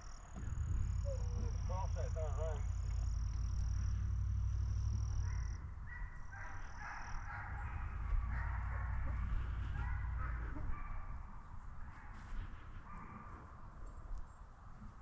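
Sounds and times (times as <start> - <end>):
low steady rumble: 0.0 - 11.8
distant hounds baying: 0.0 - 14.4.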